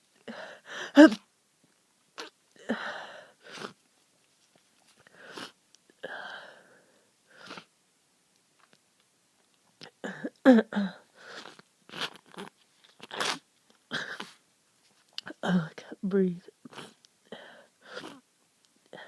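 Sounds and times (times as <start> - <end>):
person sniffling: 2.2 - 3.8, 5.0 - 7.7, 13.1 - 14.4, 16.7 - 18.2
drawn breath: 2.7 - 3.8, 5.0 - 7.7, 17.3 - 18.2.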